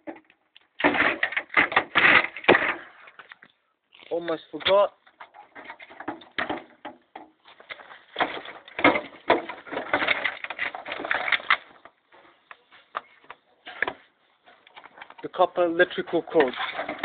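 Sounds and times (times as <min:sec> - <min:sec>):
tv parts clattering: 0:00.0 - 0:03.4, 0:04.6 - 0:12.0, 0:13.7 - 0:17.0.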